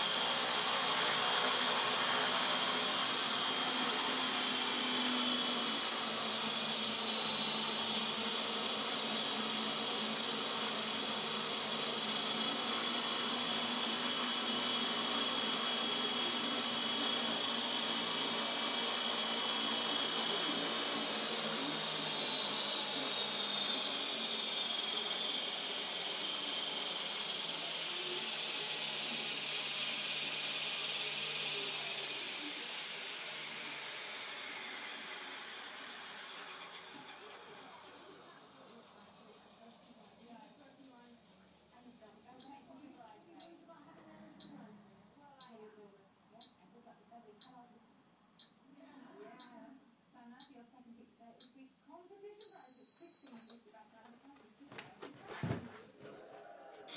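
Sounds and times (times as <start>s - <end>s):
rc helicopter whine: 0.0s - 42.0s.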